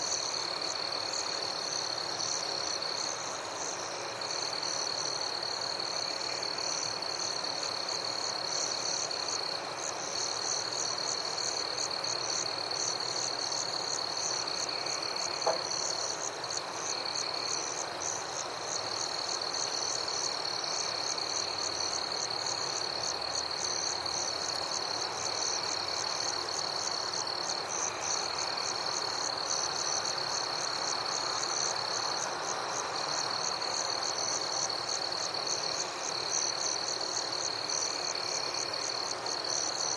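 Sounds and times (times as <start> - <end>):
high insect trill: 0.0 - 39.9
frogs croaking: 14.6 - 16.2.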